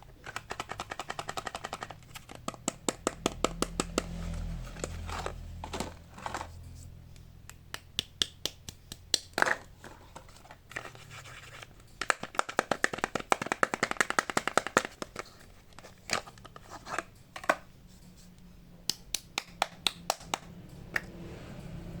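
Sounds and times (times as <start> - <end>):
sharp taps and clicks: 0.4 - 4.1, 12.0 - 15.1, 18.9 - 21.1.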